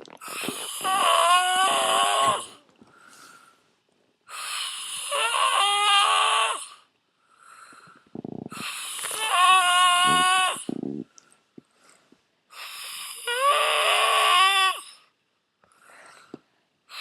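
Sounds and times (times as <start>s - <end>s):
person snoring: 0.2s - 2.6s, 8.2s - 11.1s.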